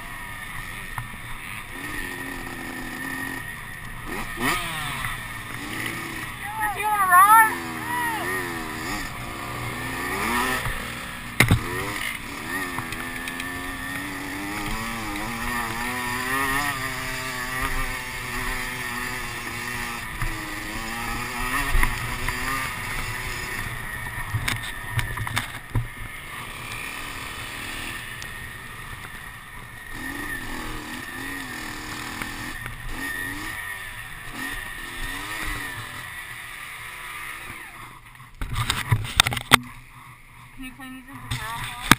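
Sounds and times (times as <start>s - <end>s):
motocross bike engine revving: 0.0s - 41.9s.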